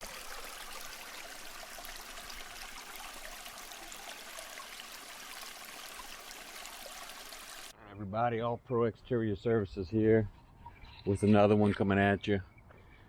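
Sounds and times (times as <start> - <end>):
running water rushing: 0.0 - 7.7.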